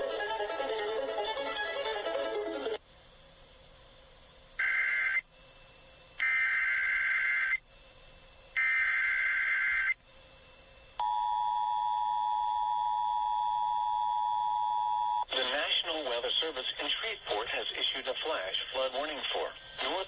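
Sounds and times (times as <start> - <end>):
two-tone attention signal: 11.0 - 15.3.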